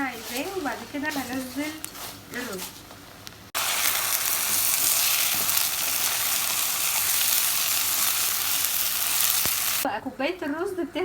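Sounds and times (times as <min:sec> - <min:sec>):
vermicelli sizzling in butter: 0:03.6 - 0:09.9.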